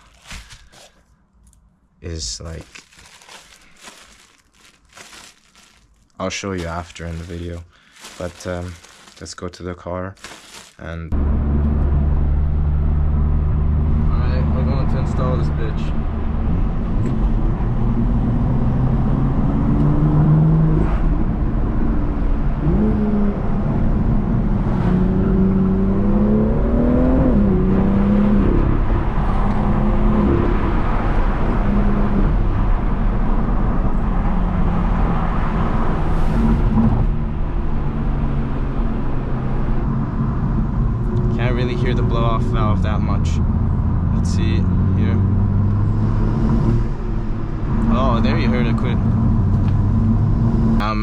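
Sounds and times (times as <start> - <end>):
car engine accelerating: 11.1 - 51.0.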